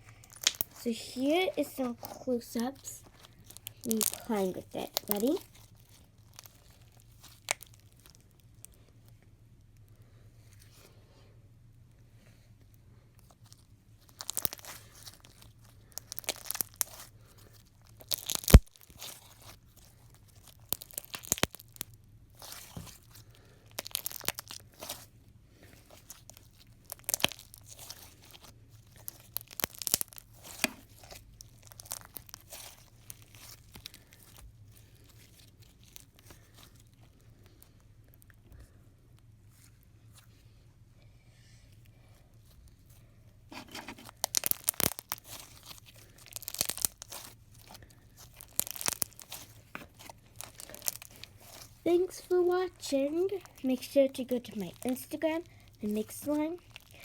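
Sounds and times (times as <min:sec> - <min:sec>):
slime squished by hand: 0:00.0 - 0:08.8, 0:13.2 - 0:38.3, 0:42.4 - 0:57.0
sticky clicks and pops: 0:00.3 - 0:00.7, 0:18.1 - 0:18.8.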